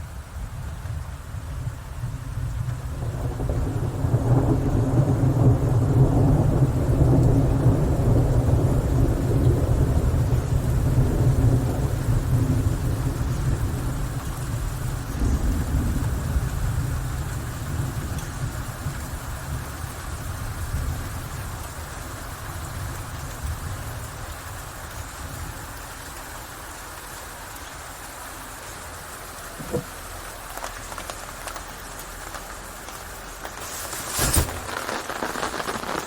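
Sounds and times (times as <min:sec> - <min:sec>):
steady rain hiss: 0:00.0 - 0:36.0
rolling thunder: 0:01.4 - 0:24.2, 0:33.4 - 0:36.0.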